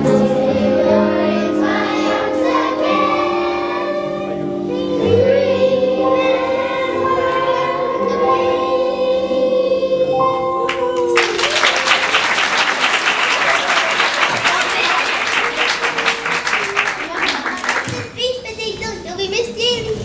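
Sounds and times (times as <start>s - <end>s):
backing music: 0.0s - 17.2s
children singing together: 0.0s - 18.1s
applause: 10.7s - 18.2s.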